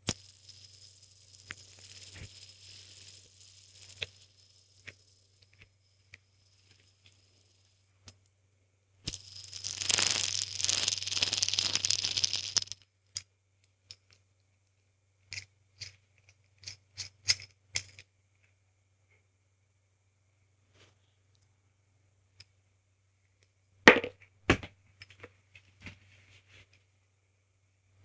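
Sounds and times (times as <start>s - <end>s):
metal spinner rattling: 0.0s - 7.9s, 9.1s - 12.8s.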